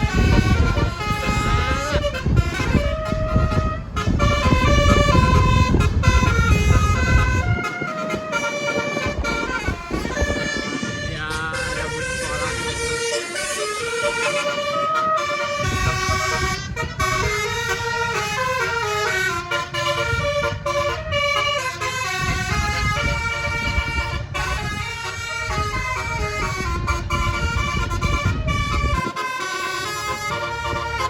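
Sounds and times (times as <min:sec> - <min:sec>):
low rumble: 0:00.0 - 0:29.0
bus multi-note horn tune: 0:00.0 - 0:31.0.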